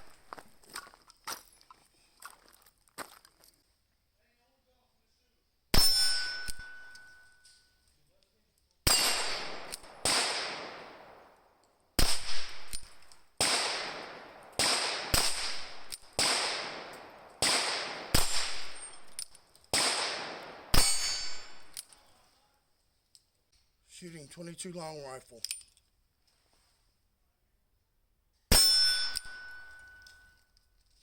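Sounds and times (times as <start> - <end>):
revolver gunshots: 8.9 - 11.3, 12.0 - 21.8.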